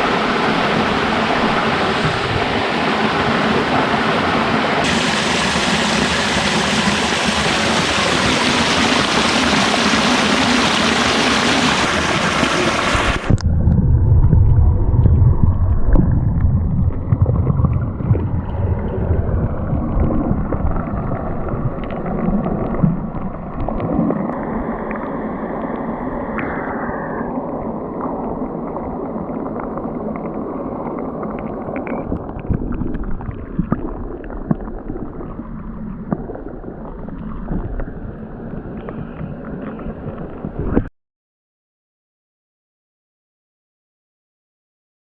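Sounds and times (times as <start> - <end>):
waterfall rushing into pool: 0.0 - 13.4, 24.2 - 32.1
muffled underwater rumble: 0.0 - 40.9
underwater knocks: 4.9 - 20.8.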